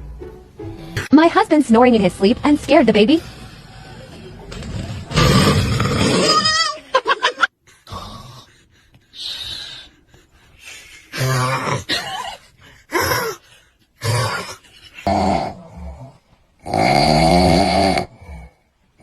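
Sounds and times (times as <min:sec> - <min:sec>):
loud snoring: 0:02.4 - 0:06.6, 0:07.8 - 0:08.5, 0:11.1 - 0:12.2, 0:14.0 - 0:19.0
baby crying: 0:05.1 - 0:07.1.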